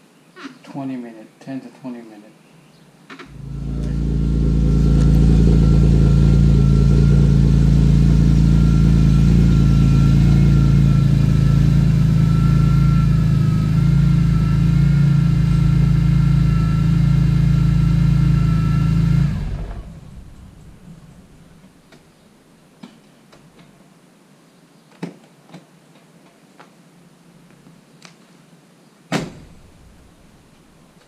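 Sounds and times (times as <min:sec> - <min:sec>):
car engine running: 0:03.3 - 0:21.9, 0:29.3 - 0:30.6.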